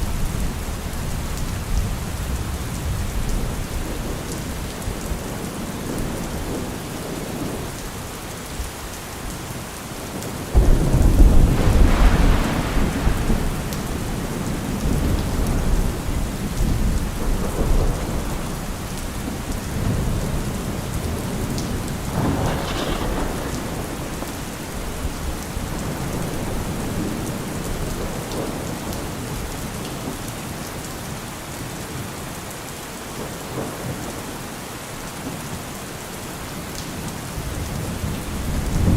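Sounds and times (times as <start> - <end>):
heavy rain: 0.0 - 38.9
thunder rumble: 10.1 - 29.6, 37.4 - 38.9.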